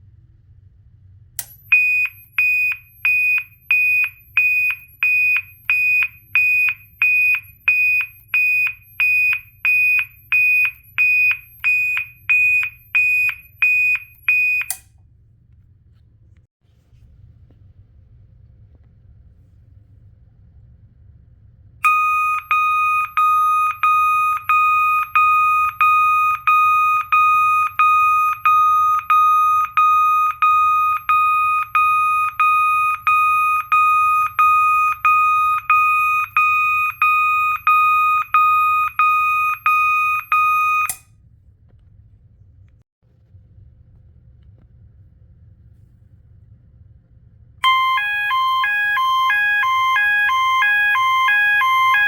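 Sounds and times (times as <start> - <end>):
fire alarm pulsed beeping: 1.4 - 14.9, 21.8 - 41.1, 47.6 - 52.0.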